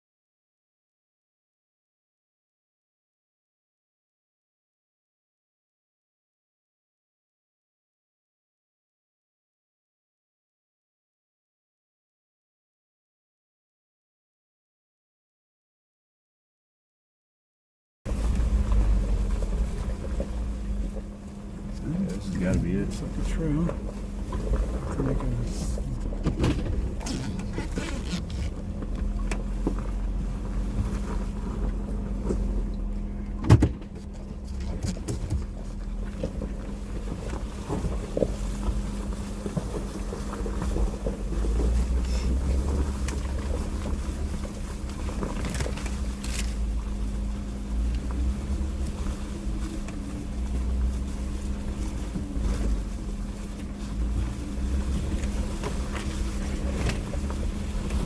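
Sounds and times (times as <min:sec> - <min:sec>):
body and suspension rattles: 0:18.1 - 0:58.0
engine droning: 0:18.1 - 0:58.0.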